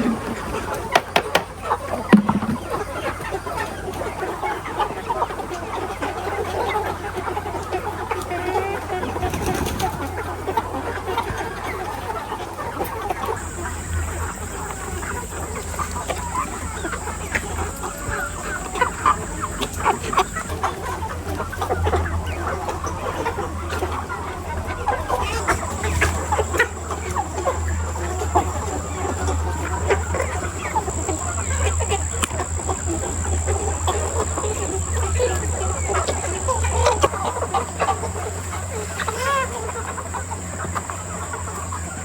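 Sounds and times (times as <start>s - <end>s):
steady low hum: 13.3s - 22.6s, 23.4s - 42.0s
chickens clucking and calling: 13.3s - 42.0s.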